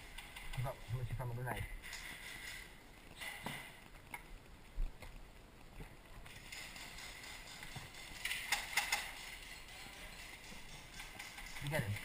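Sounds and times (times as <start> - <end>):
sharp clicks: 6.3 - 9.6.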